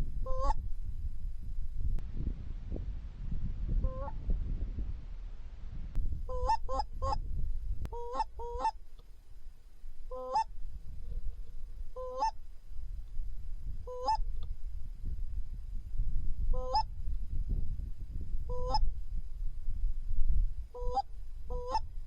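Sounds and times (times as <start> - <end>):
low rumble: 0.0 - 8.6
goose honking: 0.3 - 0.6, 10.1 - 10.5, 12.0 - 12.4.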